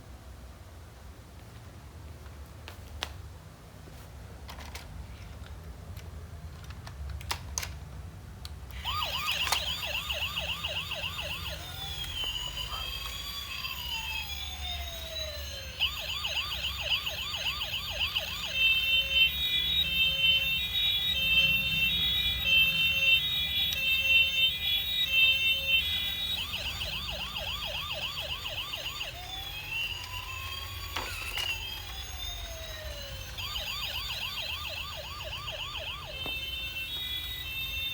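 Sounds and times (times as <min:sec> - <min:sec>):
toy fire truck electronic siren: 0:08.7 - 0:37.9.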